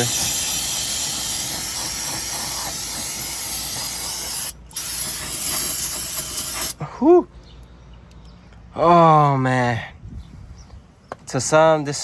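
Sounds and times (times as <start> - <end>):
aerosol can spraying: 0.0 - 6.8.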